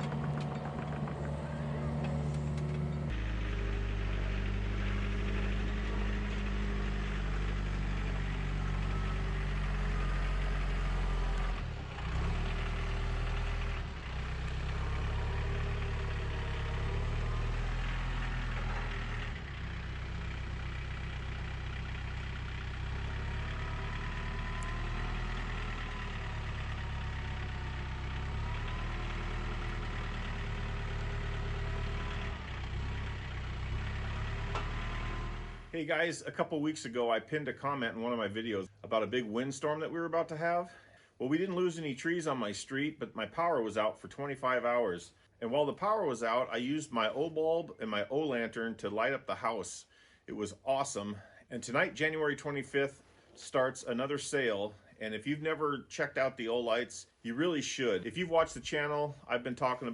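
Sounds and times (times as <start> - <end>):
large engine running at low revs: 0.0 - 35.7.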